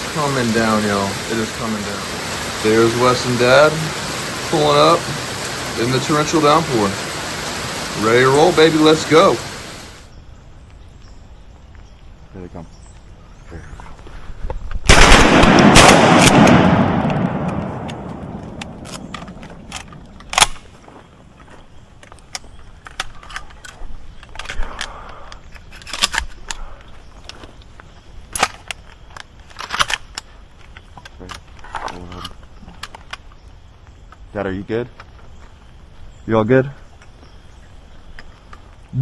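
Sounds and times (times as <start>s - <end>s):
shotgun blasts echoing: 14.9s - 20.5s.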